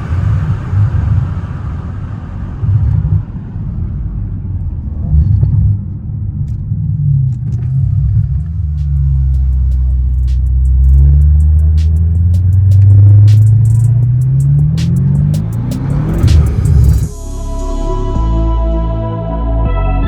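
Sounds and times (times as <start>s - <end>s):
high rushing noise: 0.0s - 4.6s, 8.2s - 19.3s
car engine rumbling: 0.0s - 19.7s.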